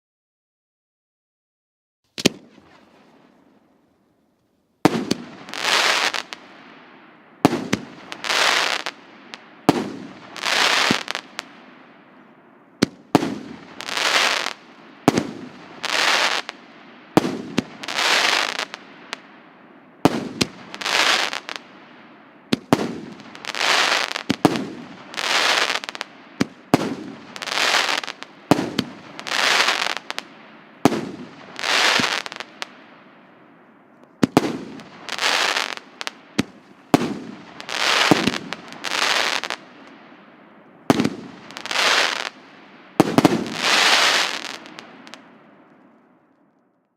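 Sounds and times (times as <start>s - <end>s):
firework launch cracks: 2.1s - 3.1s, 34.2s - 39.6s
crackling firework bursts: 2.1s - 3.5s, 4.8s - 12.1s, 12.8s - 19.3s, 20.0s - 33.0s, 34.2s - 40.0s, 40.9s - 45.3s.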